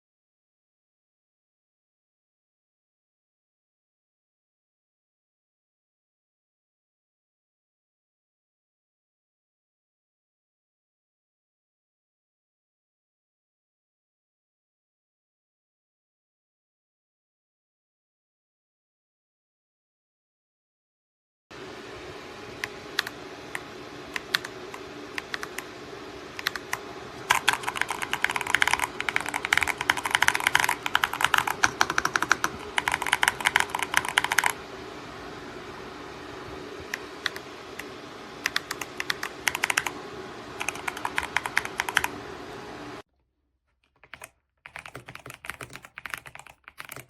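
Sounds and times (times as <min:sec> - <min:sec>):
steady low hum: 0:21.5 - 0:43.0
mechanical keyboard typing: 0:22.6 - 0:25.7, 0:26.4 - 0:34.6, 0:37.2 - 0:37.4, 0:38.4 - 0:40.0, 0:40.6 - 0:42.2, 0:43.8 - 0:47.0.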